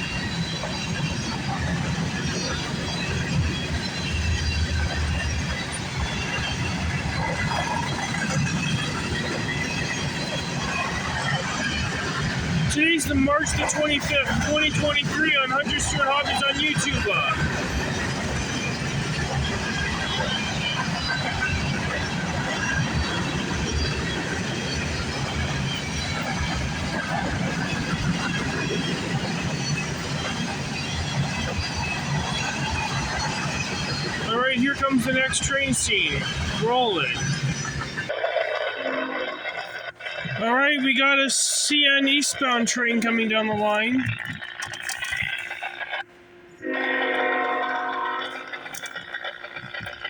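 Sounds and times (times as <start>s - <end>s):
freight train cars rumbling: 0.0s - 50.0s
wheel squeals: 0.0s - 50.0s.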